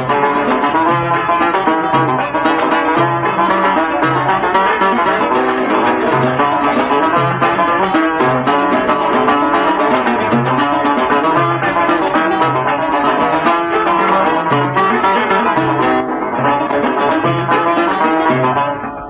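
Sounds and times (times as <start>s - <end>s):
plucked strings playing melody: 0.0s - 19.0s.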